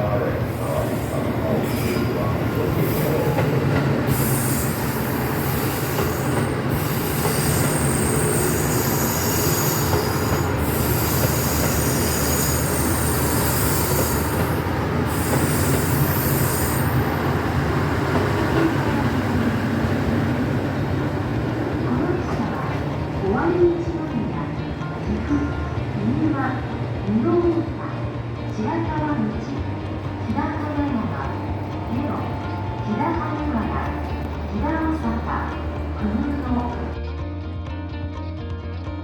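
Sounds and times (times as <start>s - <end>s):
train engine drone and rail rumble: 0.0s - 37.0s
high-pitched wheel squeal: 4.1s - 17.2s.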